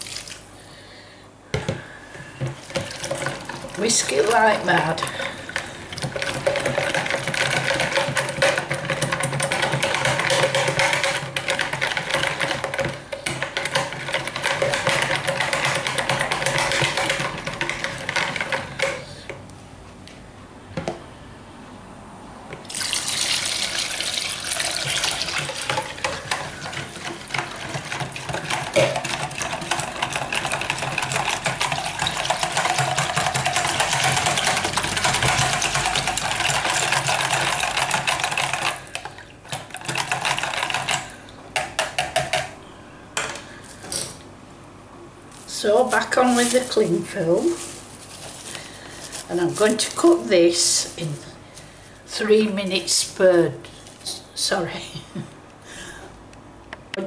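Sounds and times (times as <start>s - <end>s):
wire whisk beating liquid: 2.6s - 19.0s, 22.8s - 42.5s.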